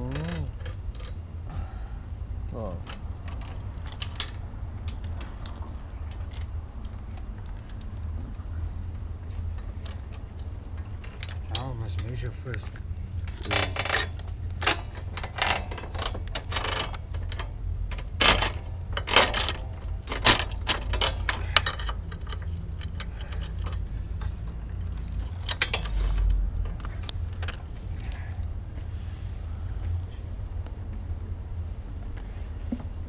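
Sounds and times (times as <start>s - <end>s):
steady low hum: 0.0s - 33.0s
metal chain and tools clinking: 13.2s - 28.6s.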